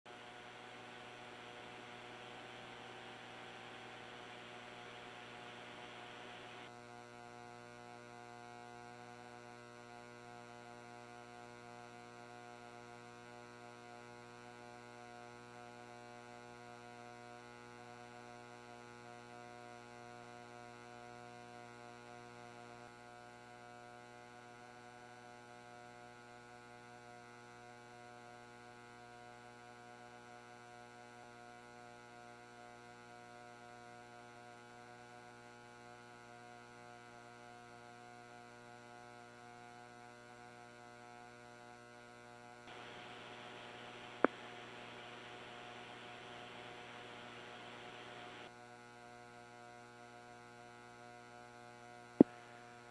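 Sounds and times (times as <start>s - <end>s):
faint electrical hum: 0.1s - 27.2s, 42.6s - 48.5s.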